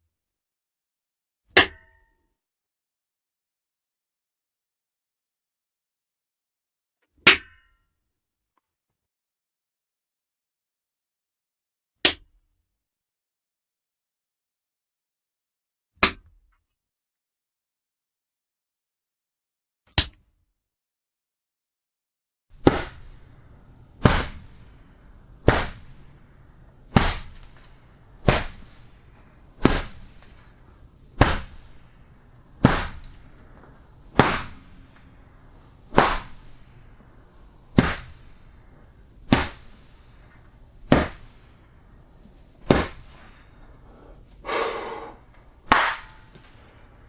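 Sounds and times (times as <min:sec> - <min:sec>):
punch impacts: 0:22.6 - 0:46.6.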